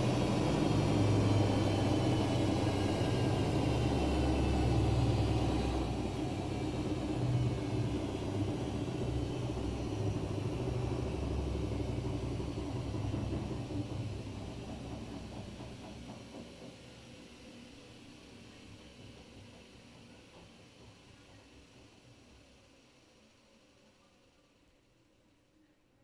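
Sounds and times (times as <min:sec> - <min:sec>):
washing machine spinning: 0:00.0 - 0:17.5.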